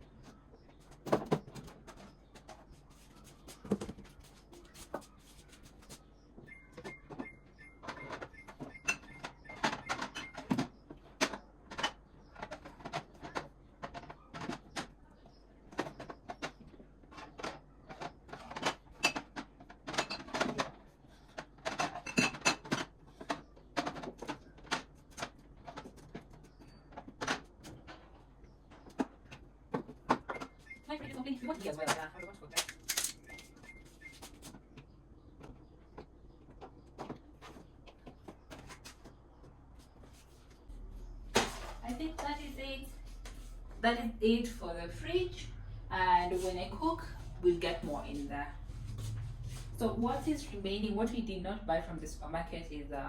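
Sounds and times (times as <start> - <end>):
containers clinking on fridge shelves: 6.4 - 39.1.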